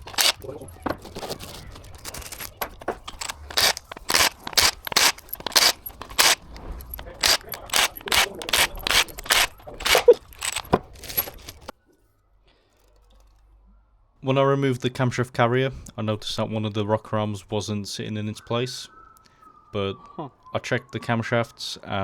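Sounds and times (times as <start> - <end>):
metal tools clinking and scraping: 0.0 - 11.7.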